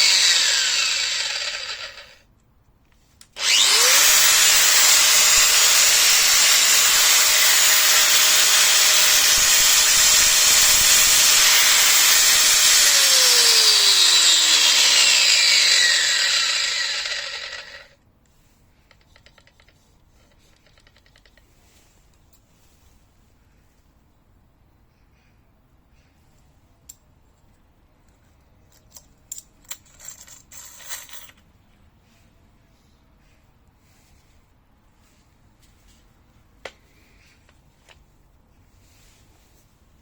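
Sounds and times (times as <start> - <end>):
angle grinder motor whining: 0.0 - 2.2, 3.4 - 17.9.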